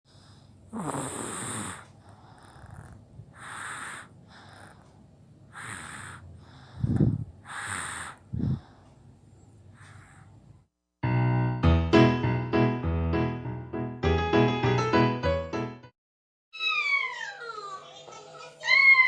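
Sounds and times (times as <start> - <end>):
baby breathing noisily: 0.1 - 10.5.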